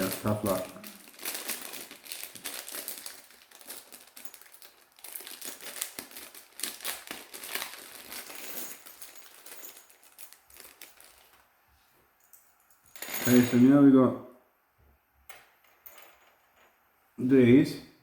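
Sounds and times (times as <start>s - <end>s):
plastic bag crinkling: 0.0s - 11.5s.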